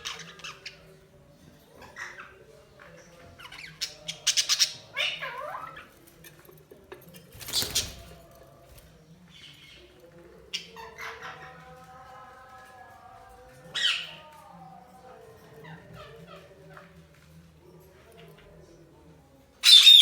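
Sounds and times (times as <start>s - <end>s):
budgies chirping and squawking: 0.0s - 1.1s, 1.8s - 6.2s, 9.3s - 11.8s, 13.7s - 14.3s.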